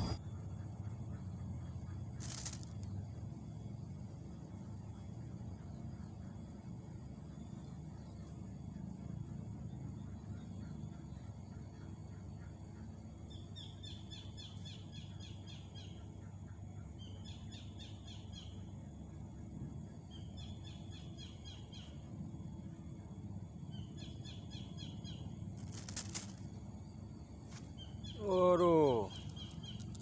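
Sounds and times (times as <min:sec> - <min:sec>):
low background rumble: 0:00.0 - 0:30.0
songbird chirping: 0:07.4 - 0:22.2, 0:23.0 - 0:30.0.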